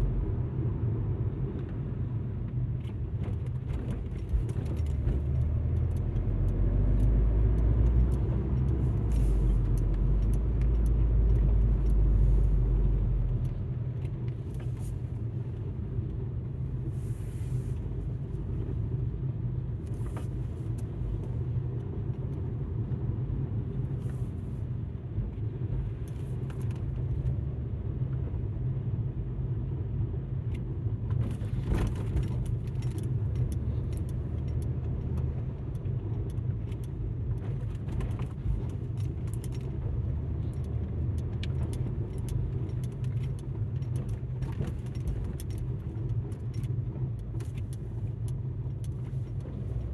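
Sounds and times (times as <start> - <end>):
car engine and tyres droning: 0.0 - 49.9
small clicks and rattles: 31.2 - 49.9.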